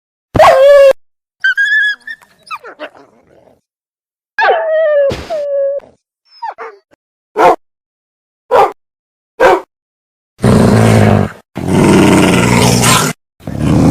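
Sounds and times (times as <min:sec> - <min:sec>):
canine whines and yelps: 0:00.4 - 0:03.1, 0:04.4 - 0:07.0.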